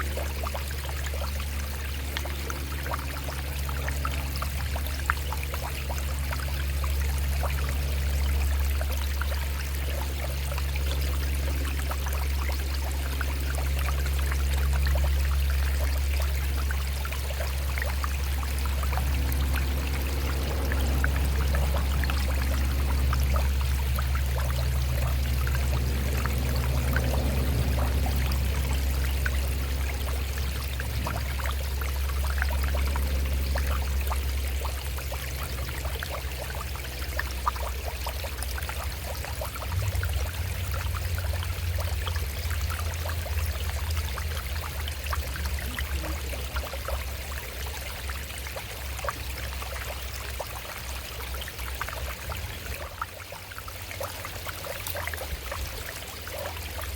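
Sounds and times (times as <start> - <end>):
low rumble of road traffic: 0.0 - 56.9
stream running over rocks: 0.0 - 56.9.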